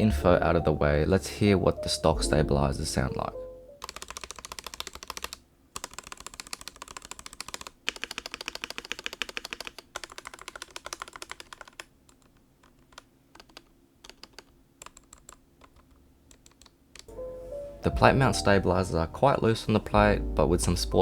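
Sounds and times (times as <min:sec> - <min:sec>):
mechanical keyboard key clacks: 0:03.8 - 0:17.1.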